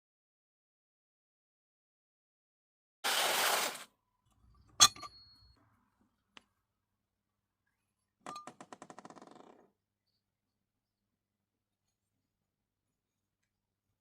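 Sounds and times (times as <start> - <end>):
metallic clink: 4.8 - 5.6.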